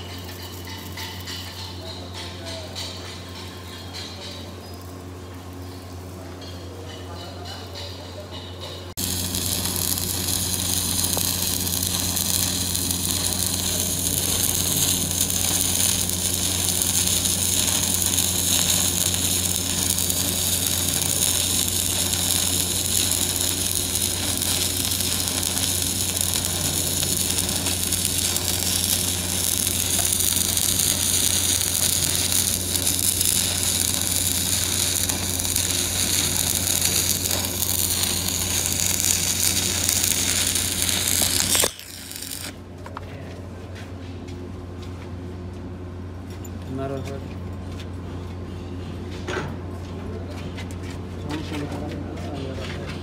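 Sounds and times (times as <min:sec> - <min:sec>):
constant low hum: 0:00.0 - 0:53.0
electric arc welding: 0:09.0 - 0:42.6.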